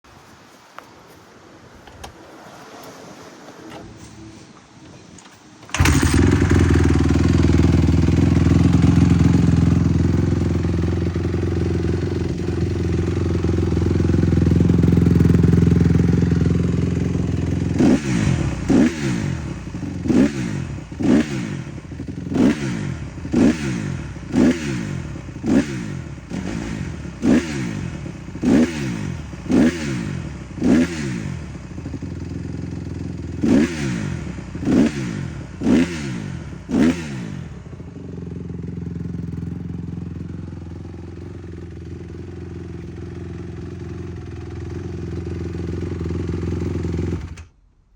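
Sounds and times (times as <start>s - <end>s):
motorcycle engine idling and revving: 5.6s - 47.6s.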